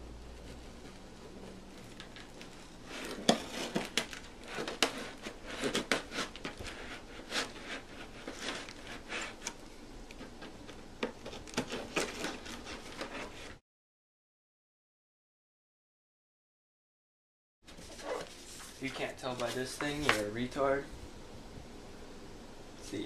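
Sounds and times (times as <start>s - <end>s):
cardboard box being opened: 1.8s - 9.4s.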